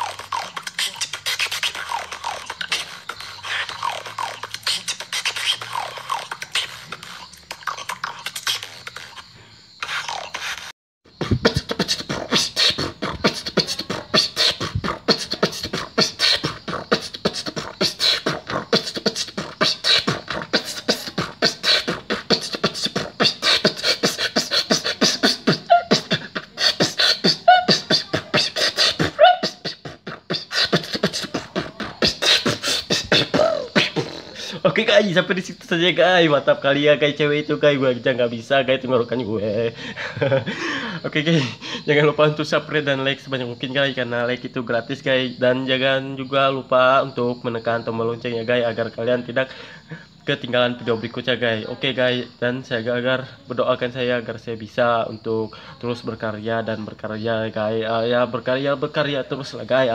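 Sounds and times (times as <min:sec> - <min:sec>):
woman beatboxing: 0:00.0 - 0:34.7.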